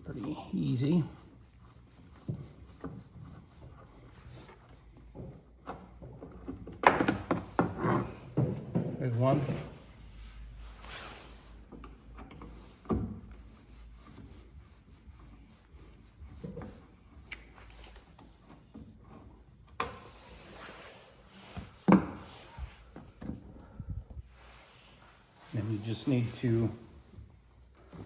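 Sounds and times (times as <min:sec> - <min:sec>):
screwdriver rubbing and scraping: 0:00.1 - 0:05.0.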